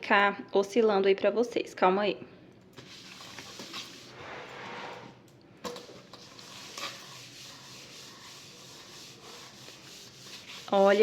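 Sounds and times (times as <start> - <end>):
paper towel wiping countertop: 2.8 - 5.2, 6.0 - 11.0.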